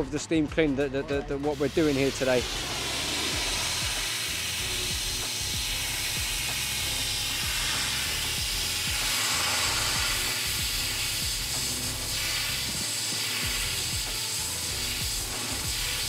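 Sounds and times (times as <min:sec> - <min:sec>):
steam cleaner hissing: 0:01.4 - 0:16.0.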